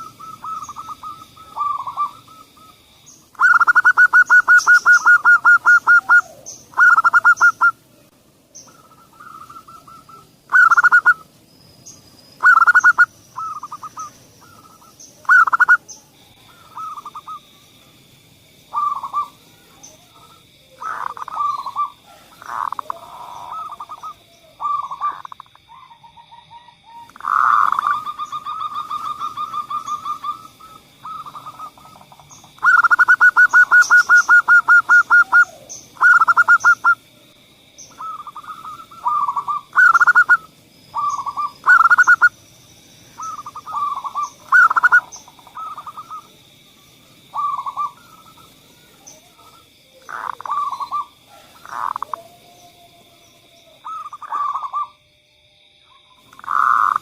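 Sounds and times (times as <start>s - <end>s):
doves cooing: 0.0s - 11.3s, 12.4s - 17.6s, 18.7s - 37.1s, 37.7s - 42.4s, 43.1s - 55.0s, 56.2s - 57.0s.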